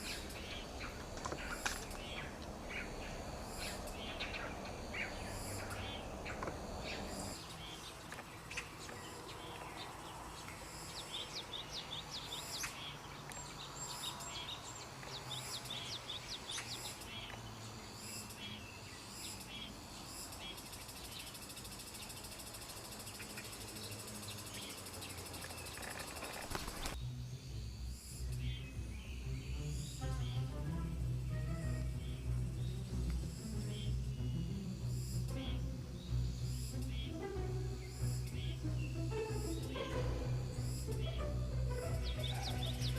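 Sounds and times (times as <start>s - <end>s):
outdoor hiss: 0.0s - 42.9s
small birds chirping: 0.0s - 42.9s
background music with low beat: 28.0s - 42.9s.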